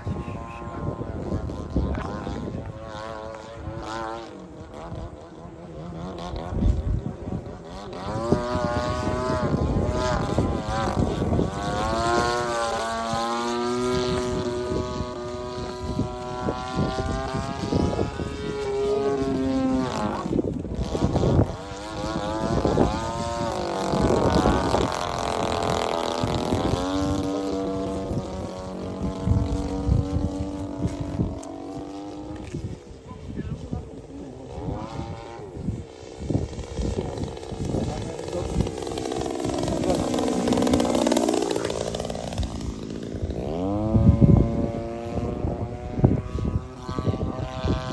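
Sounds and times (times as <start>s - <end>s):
model plane engine droning: 0.0s - 47.9s.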